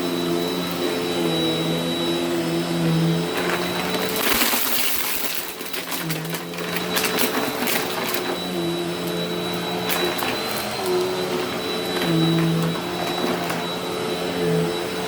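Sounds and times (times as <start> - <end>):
vacuum cleaner running: 0.0 - 15.0
debris rattling up nozzle: 3.4 - 8.6, 9.4 - 14.0.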